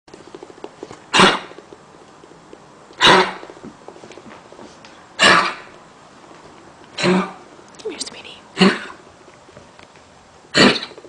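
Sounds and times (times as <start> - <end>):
dog coughing harshly: 1.1 - 1.6, 3.0 - 3.4, 5.2 - 5.7, 7.0 - 7.4, 8.6 - 9.0, 10.5 - 11.0.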